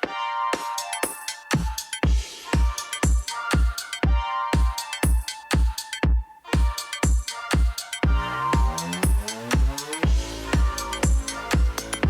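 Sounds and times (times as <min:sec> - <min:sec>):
electronic dance music: 0:00.0 - 0:12.0
steady kick drum: 0:01.0 - 0:12.0
sustained synth chords: 0:08.1 - 0:12.0.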